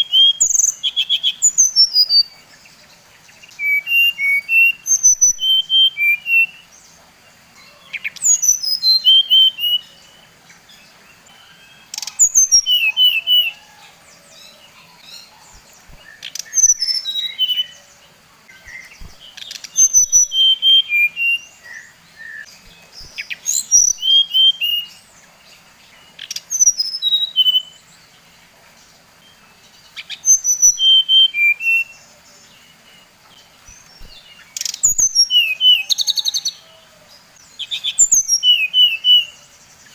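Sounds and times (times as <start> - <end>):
bird singing whistled notes: 0.0 - 2.6, 3.2 - 6.9, 7.6 - 25.2, 25.9 - 28.0, 29.3 - 36.8, 37.4 - 39.9.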